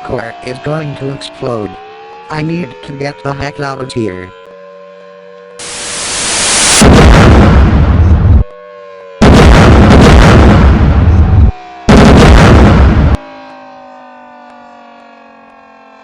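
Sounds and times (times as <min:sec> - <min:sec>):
siren tones sliding down: 0:00.0 - 0:16.0
rising whoosh: 0:05.6 - 0:08.4
very loud explosion blasts: 0:05.6 - 0:08.5, 0:09.2 - 0:13.2.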